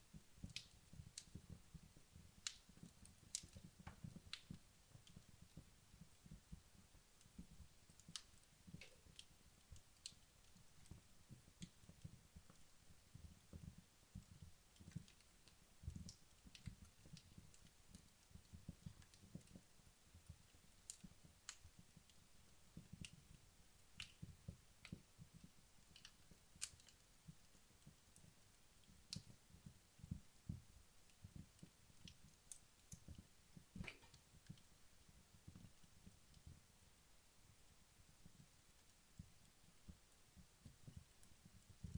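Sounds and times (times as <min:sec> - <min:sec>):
wood fire crackling: 0:00.0 - 0:41.9
sharp pops from fire: 0:00.4 - 0:13.6, 0:20.3 - 0:22.2, 0:22.8 - 0:34.7.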